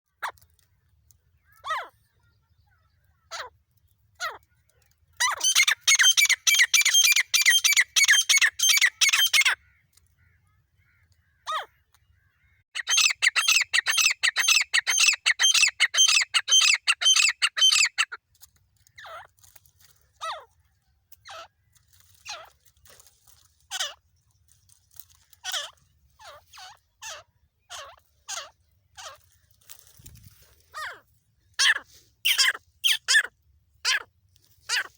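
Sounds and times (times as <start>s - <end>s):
francolin calling: 5.3s - 9.6s, 12.8s - 18.1s, 31.6s - 33.3s.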